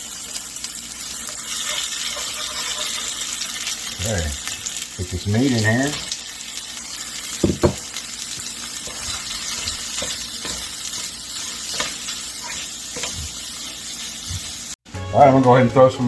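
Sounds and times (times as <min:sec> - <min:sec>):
meat sizzling in a frying pan: 0:00.0 - 0:14.8
utensil scraping a pan: 0:01.3 - 0:03.4.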